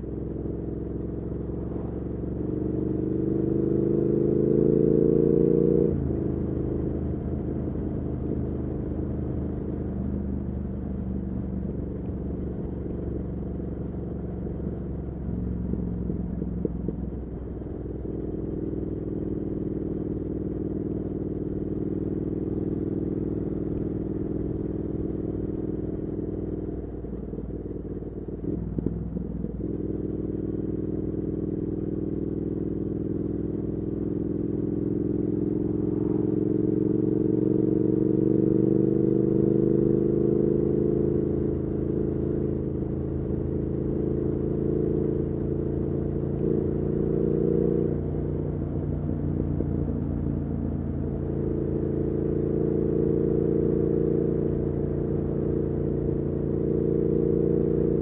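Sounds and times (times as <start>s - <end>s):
motorcycle engine while riding: 0.0s - 58.0s.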